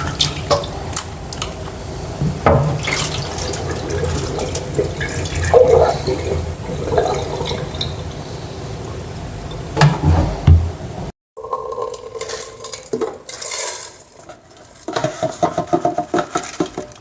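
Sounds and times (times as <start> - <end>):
water swishing and splashing: 0.0 - 10.1.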